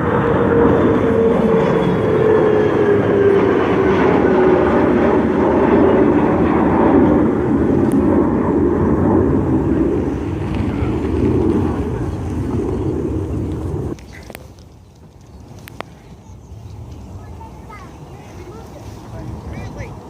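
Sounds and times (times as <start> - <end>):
jet airliner engine roar: 0.0 - 20.0.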